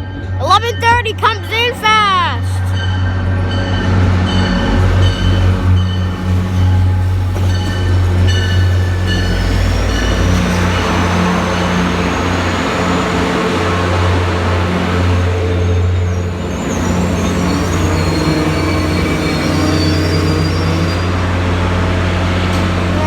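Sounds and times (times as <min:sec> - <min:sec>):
diesel locomotive engine drone: 0:00.0 - 0:23.0.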